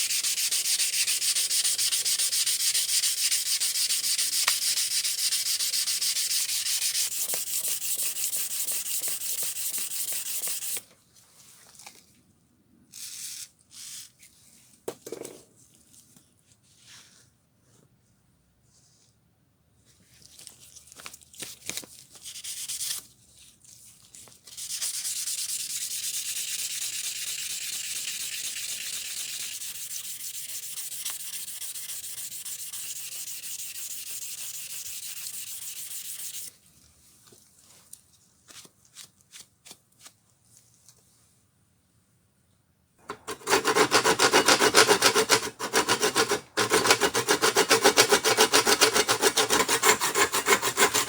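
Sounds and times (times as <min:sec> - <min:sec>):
sanding rubbing hiss: 0:00.0 - 0:10.8, 0:25.2 - 0:36.5, 0:43.1 - 0:51.0.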